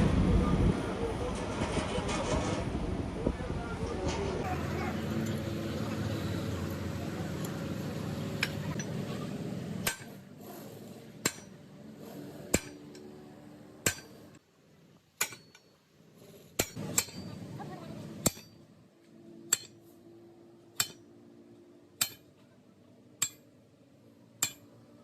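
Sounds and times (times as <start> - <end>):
steady low rumble: 0.0 - 11.6
hammer striking metal: 9.8 - 10.2, 11.2 - 11.6, 12.5 - 13.0, 13.8 - 14.3, 15.2 - 15.8, 16.6 - 17.4, 18.2 - 18.6, 19.5 - 19.8, 20.8 - 21.1, 22.0 - 22.4, 23.2 - 23.5, 24.4 - 24.8.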